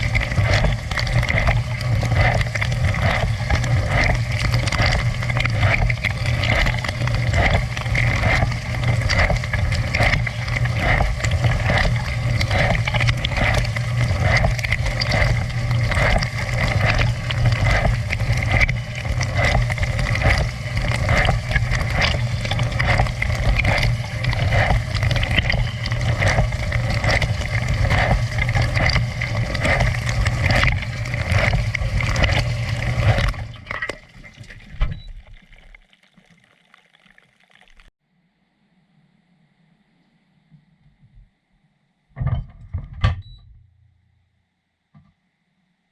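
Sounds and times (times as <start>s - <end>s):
dishwasher pump humming: 0.0s - 35.4s.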